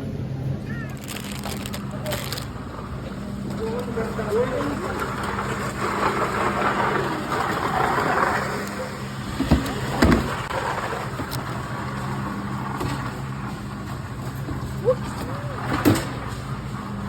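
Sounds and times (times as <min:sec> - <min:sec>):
indistinct background murmur: 0:00.0 - 0:10.5.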